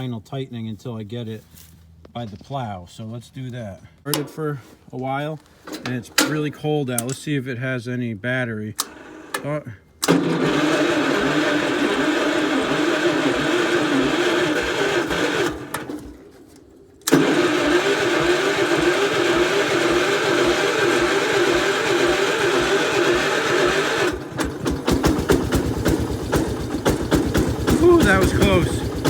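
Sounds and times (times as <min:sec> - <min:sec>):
tractor engine running unevenly: 0:10.0 - 0:29.0.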